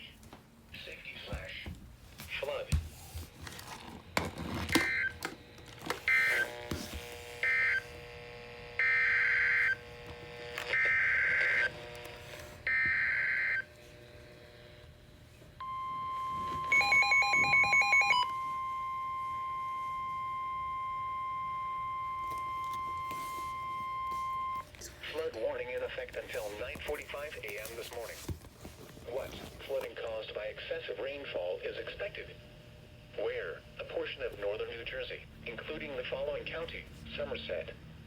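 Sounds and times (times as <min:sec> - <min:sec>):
steady warning alarm tone: 0:04.7 - 0:13.8, 0:15.6 - 0:24.7.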